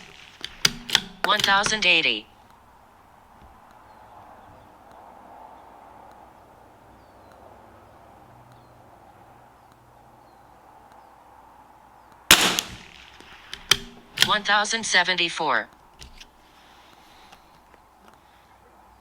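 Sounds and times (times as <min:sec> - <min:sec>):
rifle bolt click: 0:00.0 - 0:01.9, 0:12.3 - 0:14.4
rifle shot: 0:00.0 - 0:02.0, 0:12.3 - 0:14.6.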